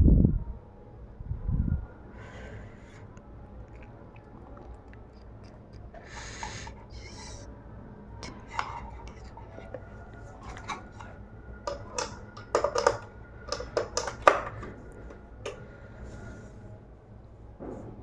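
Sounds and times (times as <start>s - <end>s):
plastic parts clicking and tapping: 8.2s - 11.1s, 11.7s - 15.6s.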